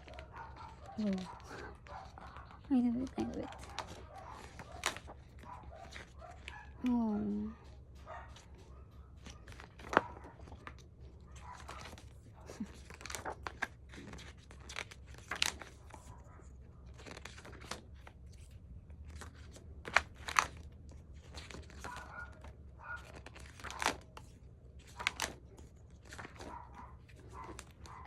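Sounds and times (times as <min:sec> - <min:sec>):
glossy pages turning: 0:00.0 - 0:07.0, 0:09.1 - 0:28.0
sharp paper snaps: 0:02.1 - 0:07.0, 0:11.6 - 0:16.1, 0:16.9 - 0:18.1, 0:19.1 - 0:20.6, 0:21.2 - 0:28.0.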